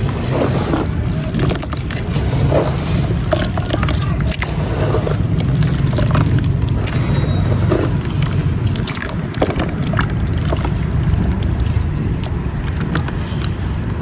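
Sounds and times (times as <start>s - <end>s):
gritty crackles: 0.0s - 14.0s
wet squishing: 0.0s - 14.0s.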